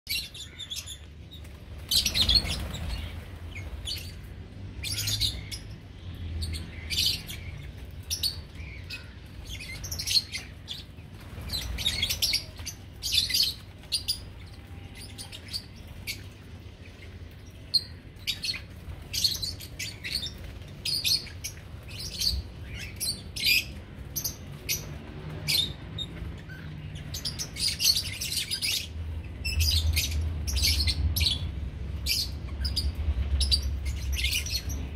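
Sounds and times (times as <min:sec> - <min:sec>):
parrots chirping: 0:17.4 - 0:34.9.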